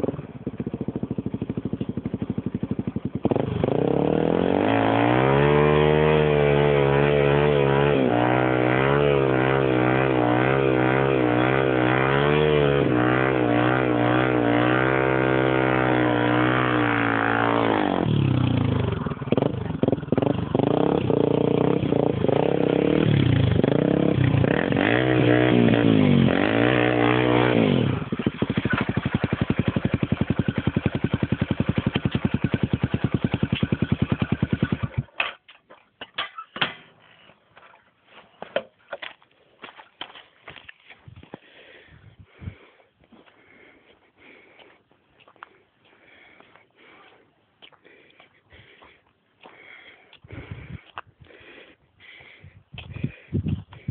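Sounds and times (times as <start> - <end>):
motorcycle engine revving and idling: 0.0 - 35.4.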